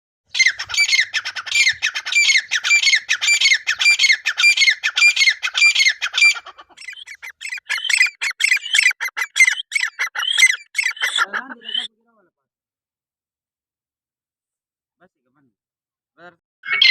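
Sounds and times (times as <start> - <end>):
francolin calling: 0.3 - 11.9, 16.6 - 16.9.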